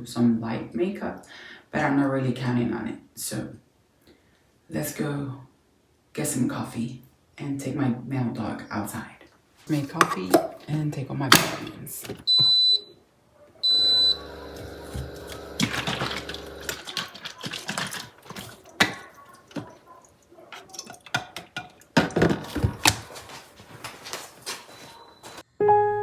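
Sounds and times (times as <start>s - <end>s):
dishes and utensils clinking: 9.7s - 12.2s, 14.5s - 23.0s
appliance beep: 12.3s - 13.0s, 13.6s - 16.7s
small motor humming: 13.7s - 16.8s.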